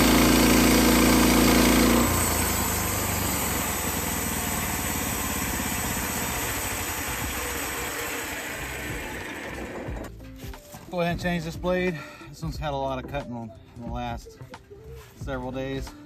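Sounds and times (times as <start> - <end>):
sawmill engine throttling down to idle: 0.0 - 10.1.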